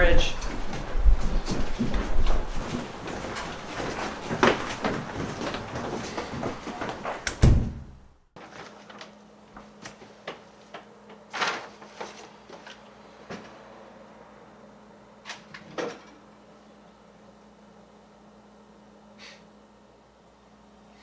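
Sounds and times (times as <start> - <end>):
busy noise: 0.0 - 7.3
door slamming: 6.4 - 8.1.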